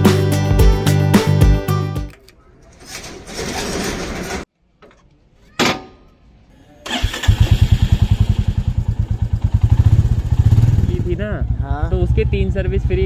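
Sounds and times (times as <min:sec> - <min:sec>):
motorcycle engine idling: 0:07.3 - 0:13.0.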